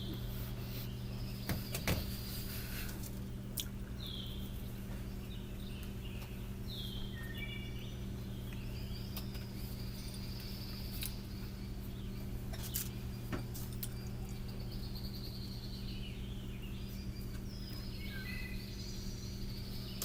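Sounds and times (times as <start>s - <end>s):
low background hum: 0.0s - 20.0s
high bird-like chirps: 14.7s - 20.0s.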